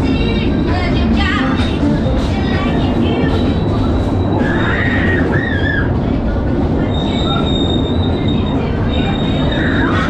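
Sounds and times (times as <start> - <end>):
ride cars rumbling on track: 0.0 - 10.0
high wheel squeals: 3.2 - 6.0, 6.8 - 10.0.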